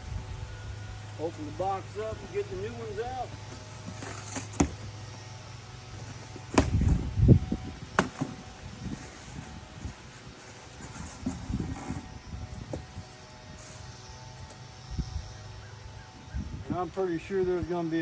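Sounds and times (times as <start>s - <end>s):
packaging rustling and thumping: 1.6s - 5.3s, 5.9s - 12.1s.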